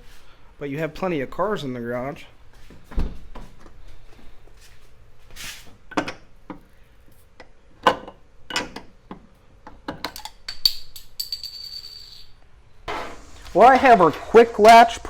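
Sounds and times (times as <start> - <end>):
metal bottle cap clattering: 10.1 - 12.3
gas hissing from bottle: 12.9 - 15.0.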